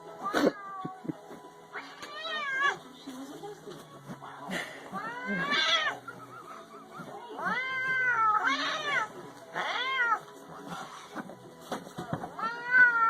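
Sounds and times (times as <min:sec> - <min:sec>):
cat meowing: 0:01.7 - 0:02.8, 0:04.9 - 0:06.1, 0:07.4 - 0:10.3, 0:12.4 - 0:13.0.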